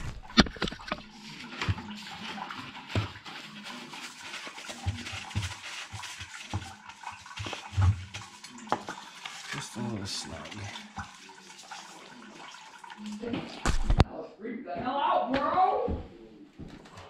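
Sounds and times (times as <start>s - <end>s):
knocks and scrapes of parts: 0.0s - 1.8s.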